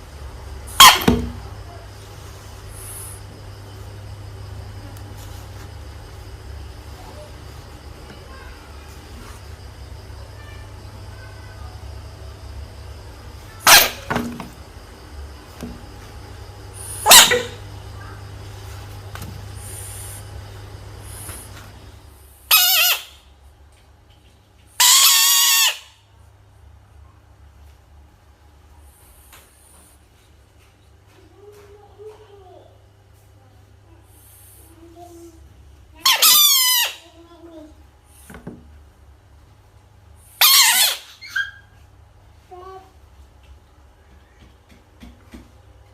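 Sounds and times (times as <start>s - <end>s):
frog squeaking and screaming: 0.7s - 1.2s, 13.6s - 14.1s, 16.9s - 17.6s, 22.5s - 23.2s, 24.8s - 26.0s, 36.0s - 37.0s, 40.3s - 41.7s.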